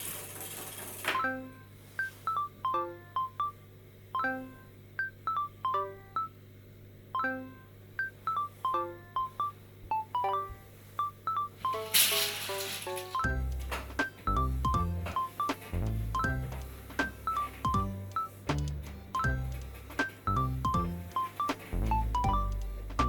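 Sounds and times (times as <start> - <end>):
light melody of short notes: 11.5 - 23.0.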